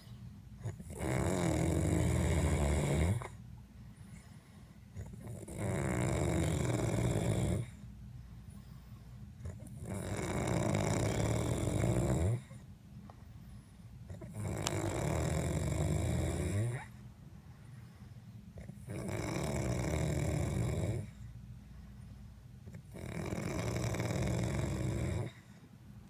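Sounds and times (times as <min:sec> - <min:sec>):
quiet breathing: 0:00.0 - 0:26.0
person snoring: 0:00.6 - 0:03.3, 0:05.0 - 0:07.8, 0:09.5 - 0:12.6, 0:14.1 - 0:16.9, 0:18.6 - 0:21.2, 0:22.8 - 0:25.4.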